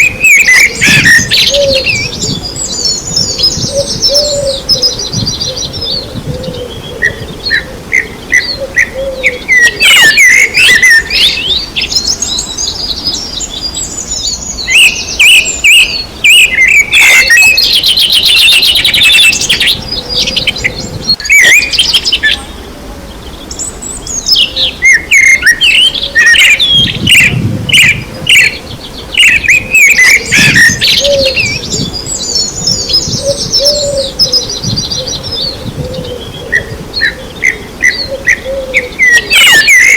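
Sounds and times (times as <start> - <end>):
songbirds chirping and singing: 0.0 - 39.9
low cooing: 0.7 - 11.7, 19.7 - 21.2, 30.2 - 32.0, 32.8 - 39.4.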